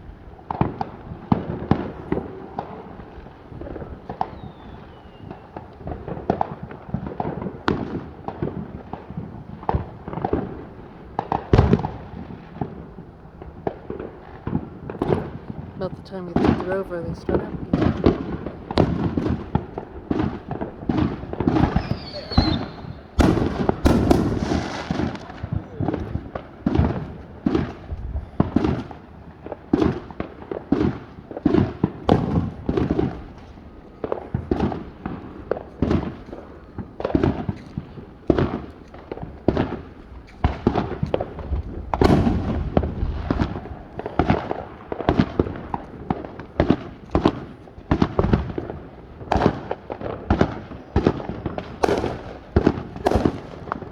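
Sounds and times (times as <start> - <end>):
fireworks booming and crackling: 0.0 - 53.9
falling firework whistle: 4.1 - 5.7, 21.4 - 26.2.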